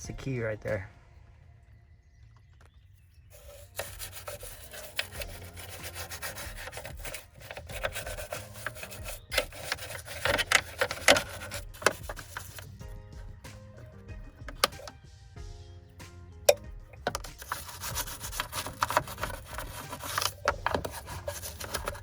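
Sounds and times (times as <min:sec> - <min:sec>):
rag rubbing car trim: 0:03.4 - 0:12.9, 0:14.2 - 0:14.9, 0:16.5 - 0:22.0.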